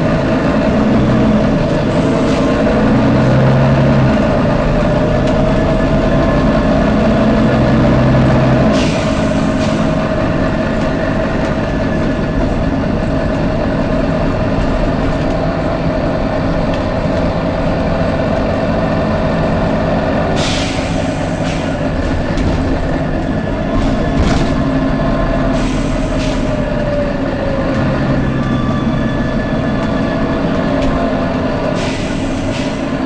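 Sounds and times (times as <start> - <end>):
bus engine drone: 0.0 - 33.0
air brake hisses: 8.7 - 9.8, 20.4 - 21.9, 25.5 - 26.5, 31.7 - 33.0.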